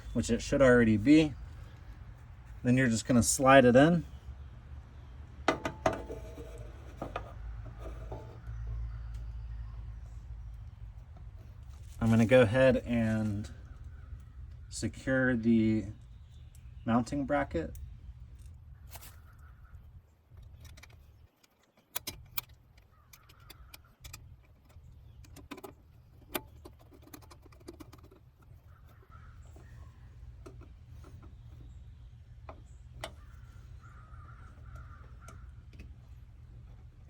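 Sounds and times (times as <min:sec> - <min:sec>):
steady low rumble: 0:00.0 - 0:05.5, 0:08.5 - 0:20.7.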